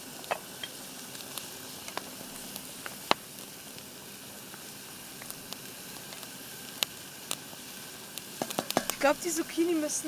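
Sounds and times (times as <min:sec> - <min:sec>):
vegetables sizzling in a pan: 0:00.0 - 0:10.0
sharp popping: 0:08.4 - 0:09.6.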